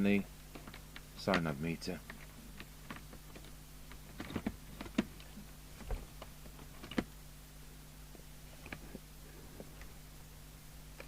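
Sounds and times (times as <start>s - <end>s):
steady low hum: 0.0s - 11.0s
clicks and knocks of plugs: 0.5s - 7.1s.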